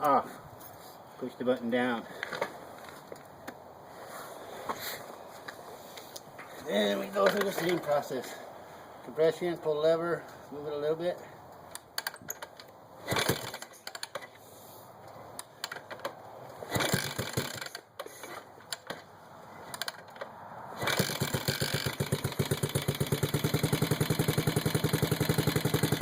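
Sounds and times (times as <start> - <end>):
motorcycle engine idling: 21.0 - 26.0.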